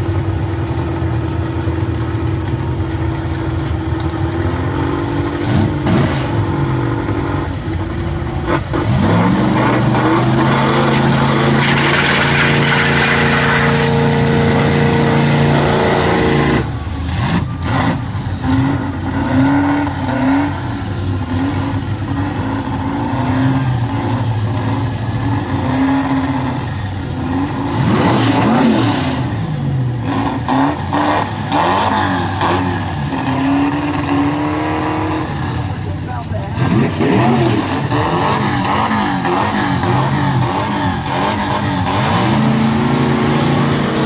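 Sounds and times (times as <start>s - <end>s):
race car engines revving: 0.0s - 44.0s.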